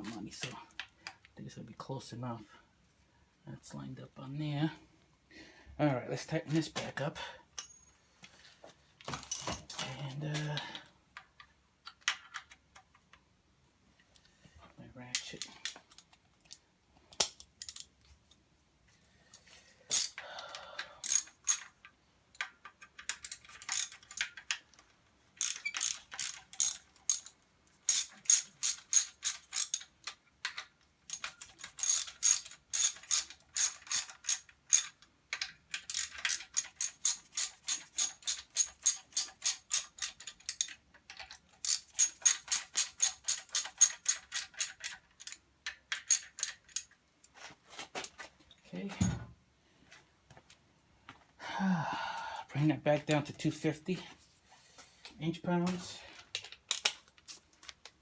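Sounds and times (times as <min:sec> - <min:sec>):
hand ratchet clicking: 0:19.9 - 0:20.2, 0:21.0 - 0:21.7, 0:23.0 - 0:24.4, 0:25.4 - 0:35.0, 0:35.8 - 0:40.8, 0:41.6 - 0:46.9.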